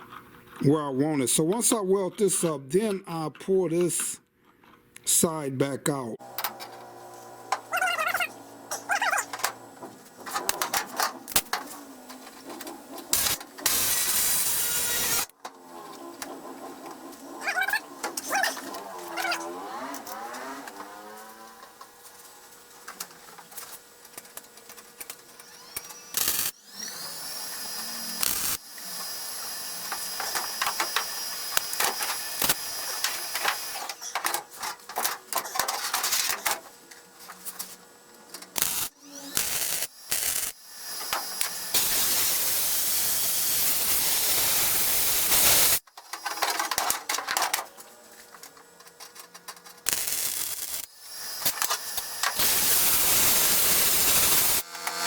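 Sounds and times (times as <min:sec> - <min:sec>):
crackling hissing welding: 0:07.1 - 0:15.4, 0:23.4 - 0:36.5, 0:38.5 - 0:47.6, 0:49.8 - 0:55.0.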